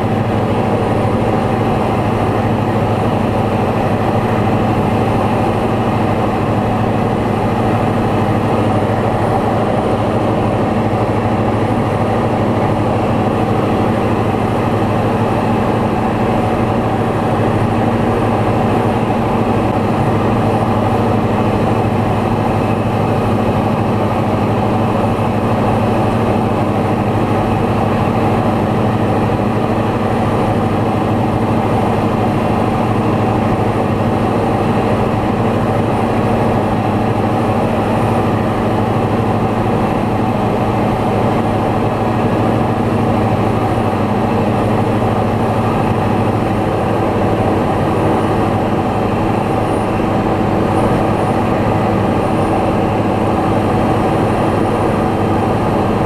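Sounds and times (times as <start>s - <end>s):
light aircraft engine drone: 0.0s - 56.0s.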